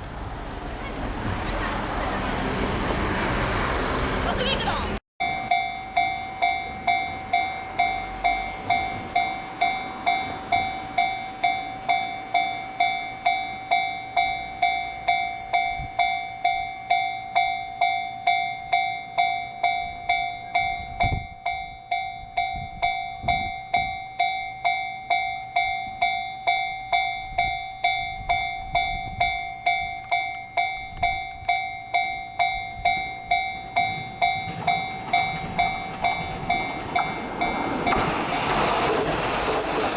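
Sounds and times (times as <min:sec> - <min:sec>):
level crossing warning bell: 0:05.2 - 0:38.5
train wheels rumbling: 0:30.9 - 0:39.9.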